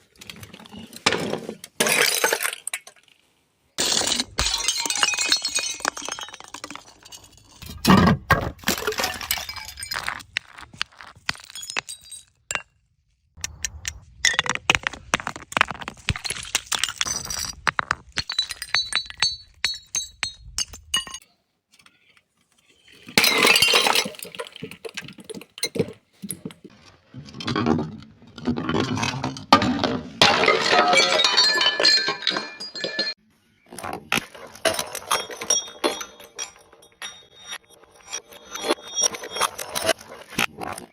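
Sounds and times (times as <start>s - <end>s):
glass bottles breaking: 1.8s - 3.0s, 3.8s - 10.2s, 11.2s - 12.7s, 16.2s - 21.2s, 22.9s - 26.4s, 28.6s - 33.2s, 34.5s - 40.5s.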